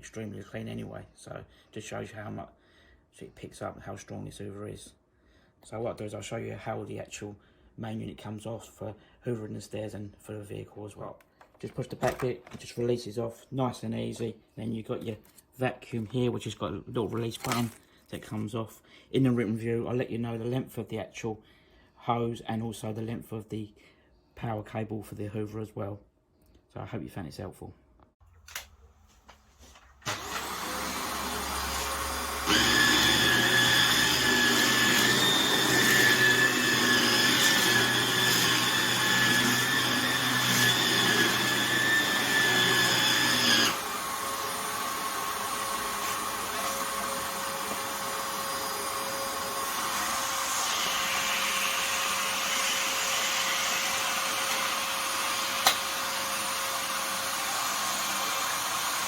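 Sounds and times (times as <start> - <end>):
vacuum cleaner running: 30.0 - 59.0
sharp click: 55.6 - 55.8.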